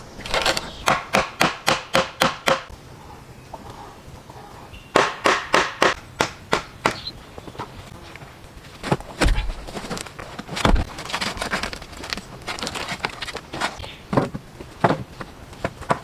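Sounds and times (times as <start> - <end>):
sharp knocks on wood: 5.0 - 7.0
wood cracking: 8.8 - 16.0.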